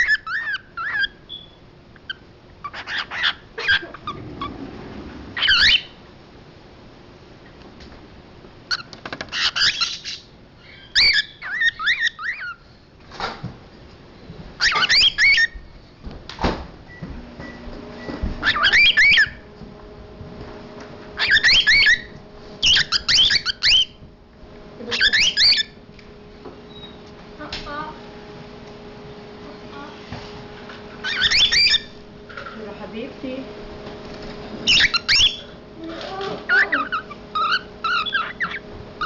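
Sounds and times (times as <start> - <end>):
cockatiel chirping and whistling: 0.0 - 4.2, 5.4 - 6.0, 8.7 - 12.6, 14.6 - 15.6, 18.4 - 19.4, 21.2 - 24.0, 24.9 - 25.8, 31.0 - 32.0, 34.6 - 35.6, 36.5 - 38.6.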